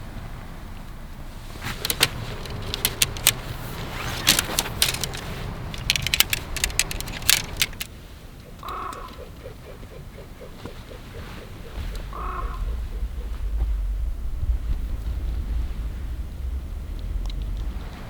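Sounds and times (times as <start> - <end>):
wind and sea rumble: 0.0 - 18.0
metallic clicks and clinks: 1.6 - 7.9.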